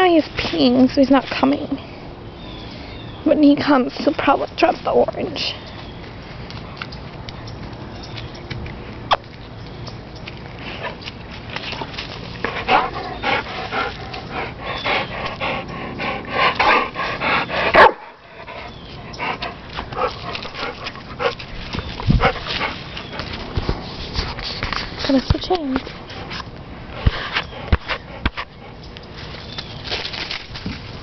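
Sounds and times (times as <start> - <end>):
dog barking and yipping: 17.7 - 18.2.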